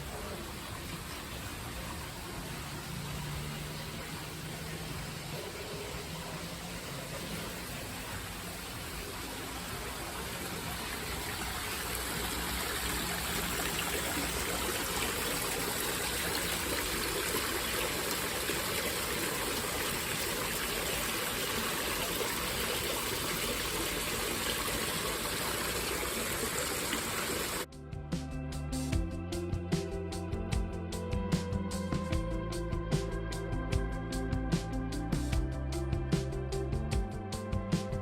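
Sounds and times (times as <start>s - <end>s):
music: 0.0s - 4.2s, 27.6s - 38.0s
steady rain falling: 0.0s - 27.7s.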